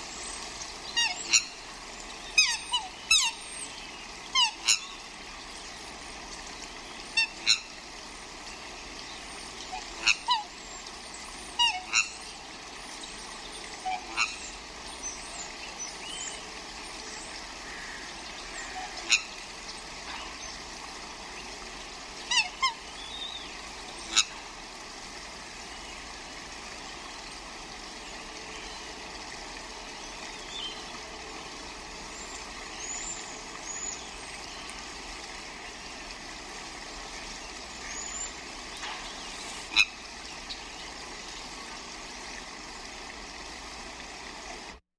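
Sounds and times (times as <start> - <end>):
steady background hiss: 0.0 - 44.8
swans honking: 0.9 - 3.4, 4.3 - 5.0, 7.0 - 7.8, 9.5 - 10.6, 11.5 - 12.4, 13.7 - 14.7, 17.6 - 20.4, 22.1 - 24.5, 37.6 - 40.6.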